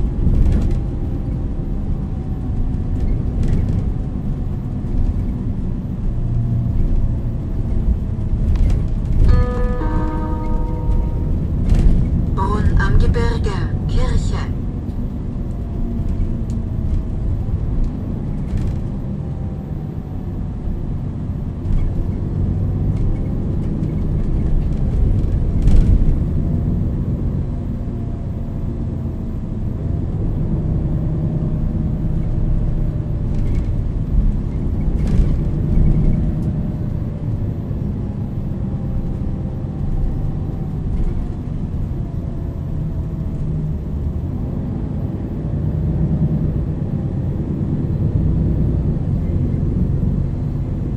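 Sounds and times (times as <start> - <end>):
bus body knocks and rattles: 0.0 - 1.4, 2.5 - 4.1, 22.9 - 26.4, 34.5 - 36.3
bus diesel engine rumble: 0.0 - 50.9.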